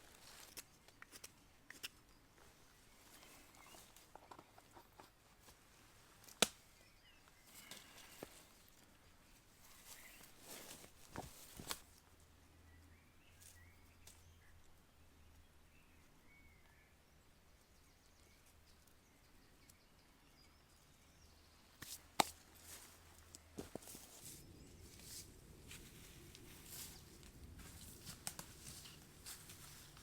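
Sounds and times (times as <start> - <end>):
faint bird chirps: 2.0 - 5.1, 12.6 - 21.8.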